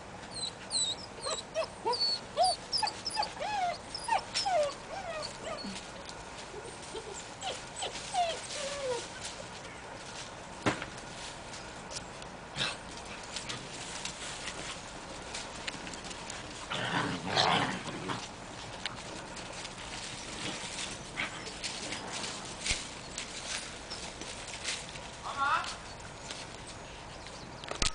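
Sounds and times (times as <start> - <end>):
puppies scuffling: 0.3 - 27.9
puppies' paws clicking and knocking: 18.1 - 27.9.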